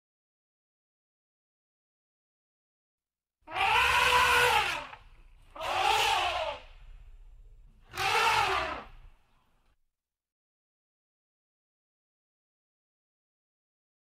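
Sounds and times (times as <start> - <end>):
animal calling: 3.5 - 6.8, 7.8 - 9.1.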